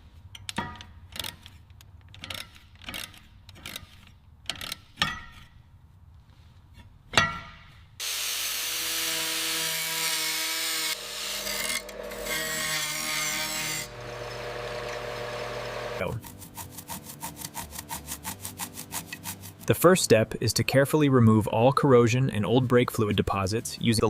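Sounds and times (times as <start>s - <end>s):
power tool abrading metal: 8.0s - 19.7s
rhythmic scrubbing strokes: 15.5s - 20.2s.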